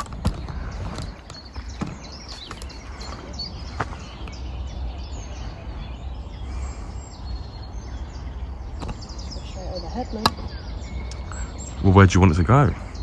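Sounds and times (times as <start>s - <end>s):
bird chirps: 0.0s - 13.0s
steady low rumble: 0.0s - 13.0s.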